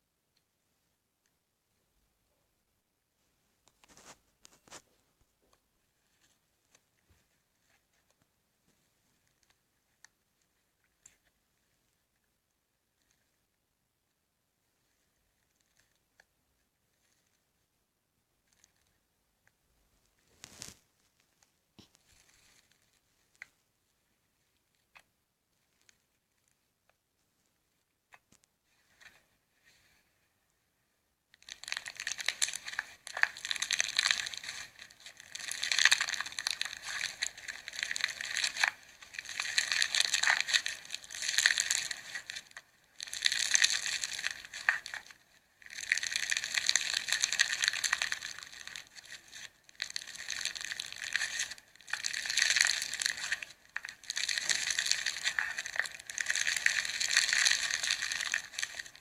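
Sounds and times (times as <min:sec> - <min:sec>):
slime squeezed crackling: 0:31.4 - 0:59.0.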